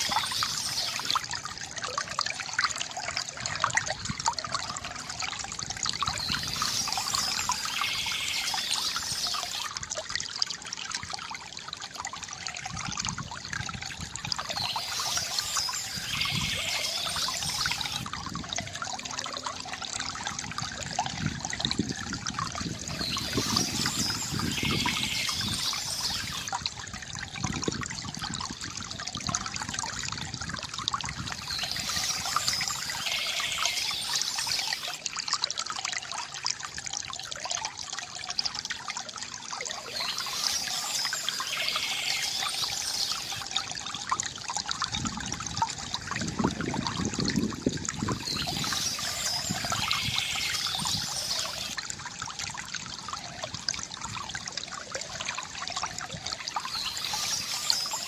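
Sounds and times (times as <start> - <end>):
fountain water trickling: 0.0 - 58.0.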